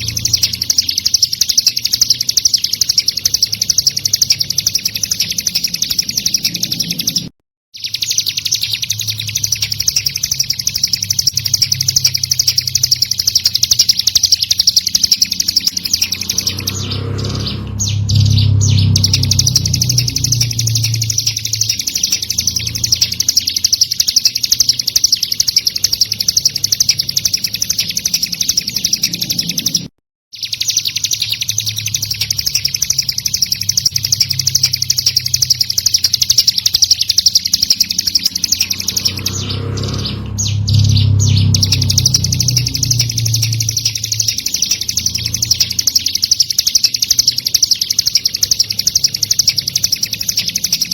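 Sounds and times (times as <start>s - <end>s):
bird song of high scratchy chirps: 0.0s - 50.9s
low rumble: 15.0s - 23.1s, 38.4s - 45.7s.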